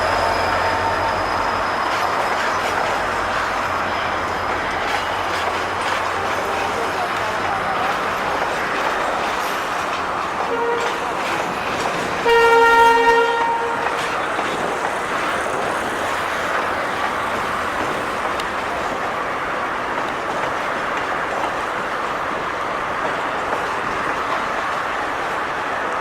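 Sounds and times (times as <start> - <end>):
train running past on track: 0.0 - 26.0
train horn blast: 10.4 - 11.2, 12.2 - 14.1.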